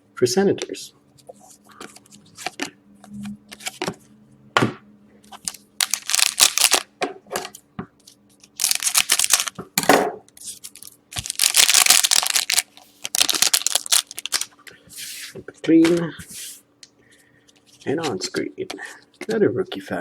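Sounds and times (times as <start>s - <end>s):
plastic wrappers crinkling: 5.3s - 6.9s, 8.4s - 9.6s, 10.5s - 14.7s.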